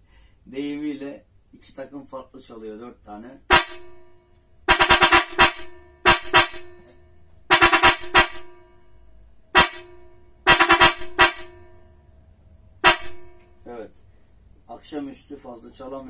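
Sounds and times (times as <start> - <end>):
electric car horns honking: 3.5 - 12.0, 12.8 - 13.6.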